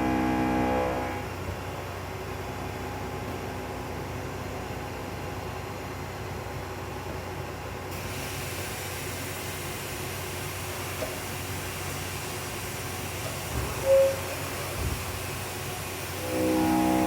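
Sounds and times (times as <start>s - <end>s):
steady hiss: 8.0s - 17.0s
short beep: 13.8s - 14.3s.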